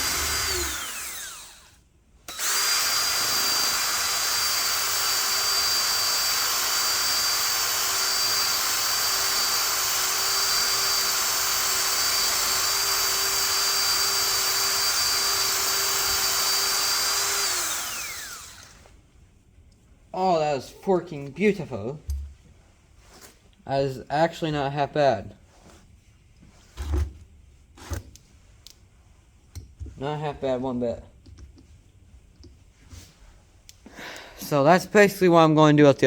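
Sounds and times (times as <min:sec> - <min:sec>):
electric drill whining: 0:00.0 - 0:19.0.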